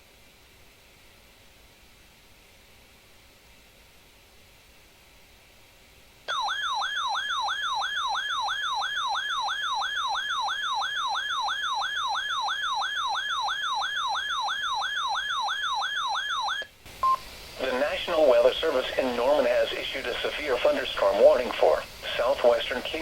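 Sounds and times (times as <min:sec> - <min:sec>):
radio alert siren warbling: 0:06.3 - 0:16.7.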